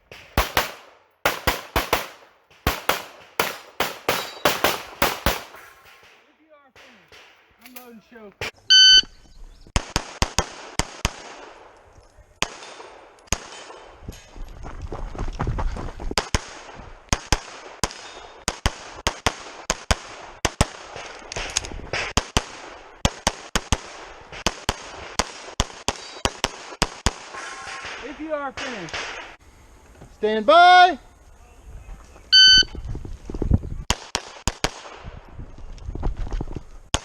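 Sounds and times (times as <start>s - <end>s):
rapid pistol fire: 0.0s - 7.6s.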